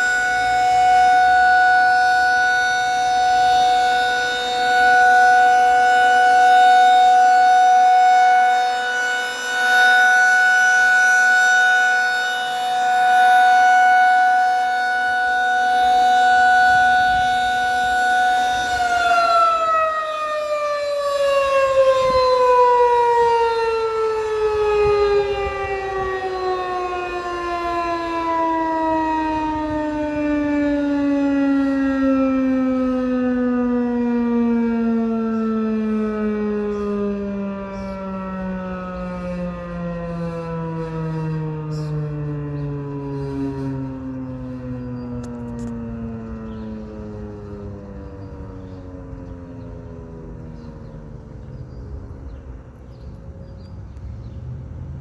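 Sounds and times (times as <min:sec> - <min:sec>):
warning siren steady tone: 0:00.0 - 0:55.0.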